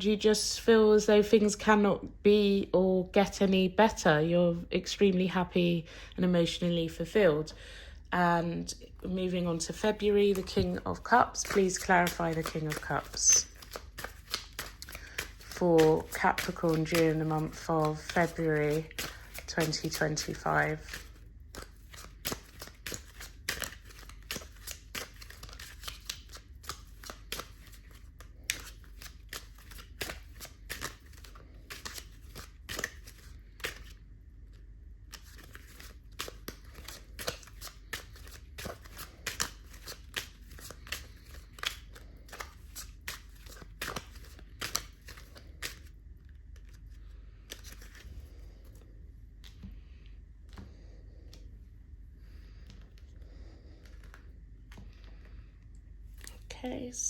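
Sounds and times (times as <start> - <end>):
cards being shuffled: 9.5 - 51.5, 52.2 - 55.4.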